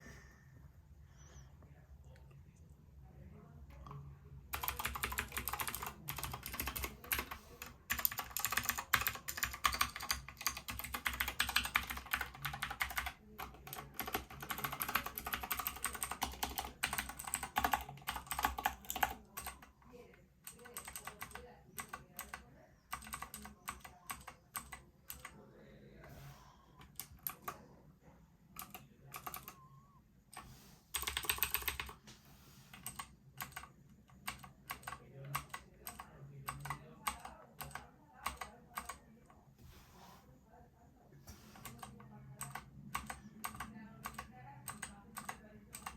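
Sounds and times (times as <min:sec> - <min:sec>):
mechanical keyboard typing: 0:04.5 - 0:19.8, 0:20.4 - 0:25.3, 0:28.6 - 0:29.7, 0:30.4 - 0:32.0, 0:32.7 - 0:39.0, 0:41.6 - 0:45.9.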